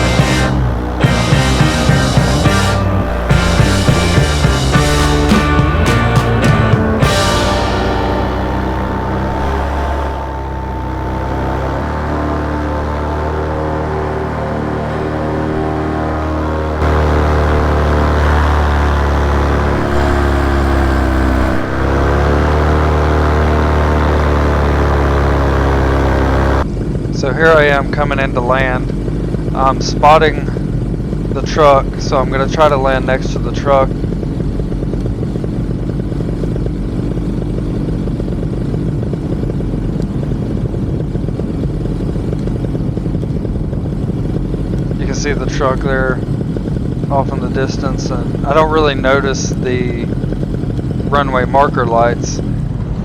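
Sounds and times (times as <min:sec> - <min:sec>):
background music: 0:00.0 - 0:24.6
paramotor engine droning: 0:00.0 - 0:53.0.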